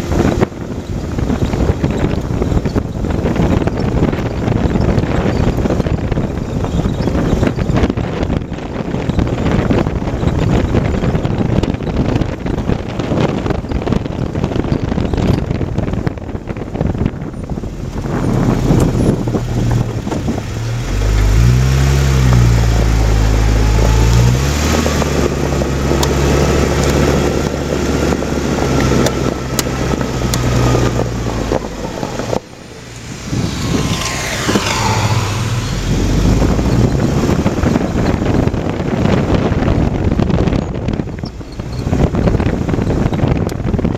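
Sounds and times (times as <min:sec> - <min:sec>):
car engine running: 0:00.0 - 0:43.9
road and wind noise: 0:00.0 - 0:43.9
falling whine: 0:29.1 - 0:38.2.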